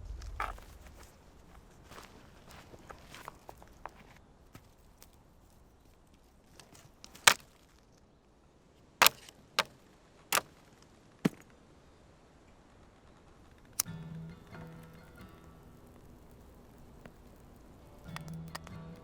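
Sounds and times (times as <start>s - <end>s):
sharp knocks: 9.0s - 9.3s.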